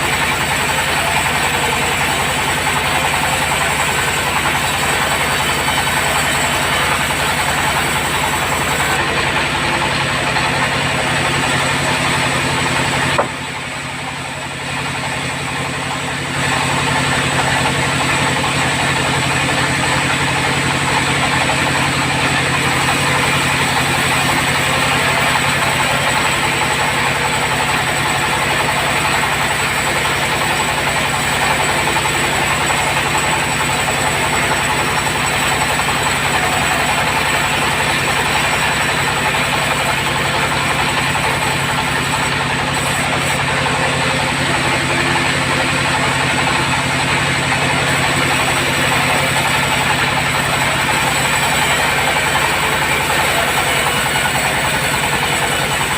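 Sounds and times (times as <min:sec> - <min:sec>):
bandsaw running: 0:00.0 - 0:55.9.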